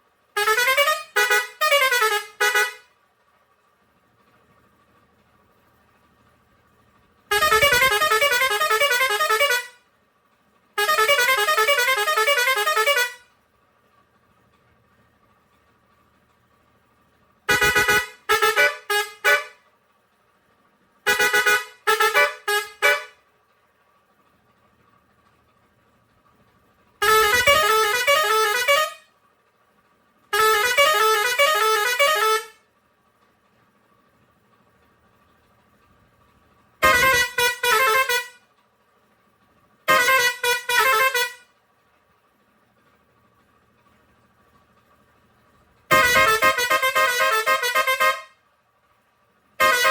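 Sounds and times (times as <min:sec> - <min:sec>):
musical truck air horn: 0:00.3 - 0:03.0, 0:07.3 - 0:09.9, 0:10.8 - 0:13.4, 0:17.5 - 0:19.7, 0:21.0 - 0:23.2, 0:27.0 - 0:29.2, 0:30.3 - 0:32.7, 0:36.8 - 0:38.5, 0:39.9 - 0:41.5, 0:45.9 - 0:48.5, 0:49.6 - 0:49.9.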